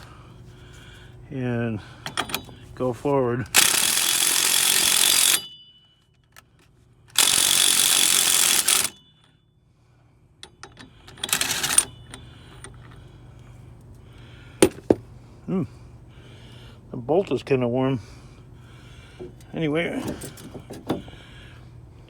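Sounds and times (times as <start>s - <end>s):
impact driver hammering: 3.5s - 5.6s, 7.1s - 9.1s, 14.6s - 15.0s.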